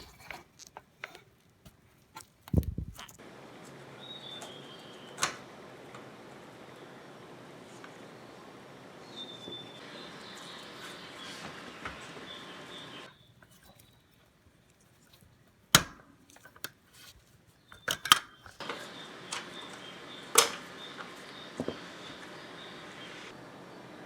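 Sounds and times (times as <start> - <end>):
faint high chirping: 3.7 - 5.3, 7.7 - 14.1, 18.6 - 24.0
plastic parts clicking into place: 17.7 - 19.5.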